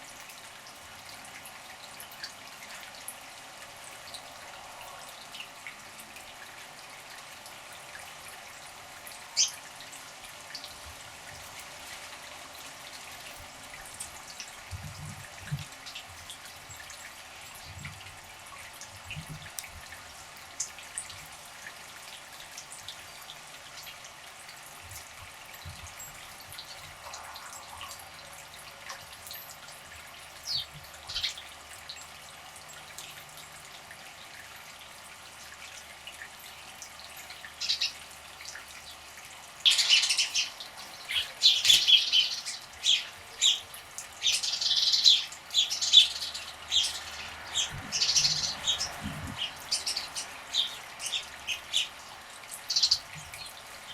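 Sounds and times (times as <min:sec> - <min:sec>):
birds chirping: 0:39.7 - 0:52.0, 0:52.6 - 0:53.9.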